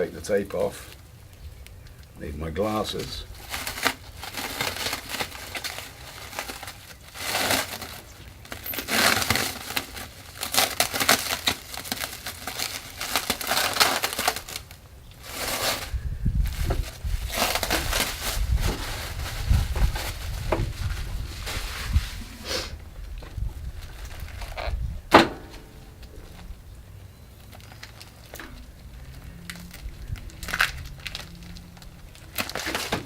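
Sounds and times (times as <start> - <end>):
plastic liner crinkling: 0.4 - 26.6, 27.2 - 33.0
handling bumps and rumbling: 15.1 - 26.9.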